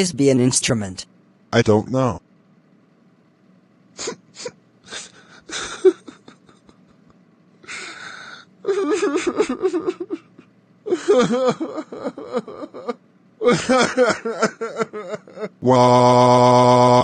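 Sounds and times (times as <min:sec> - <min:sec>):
person hissing: 0:04.0 - 0:05.6
breathy voice bursts: 0:07.6 - 0:09.0, 0:15.4 - 0:17.0.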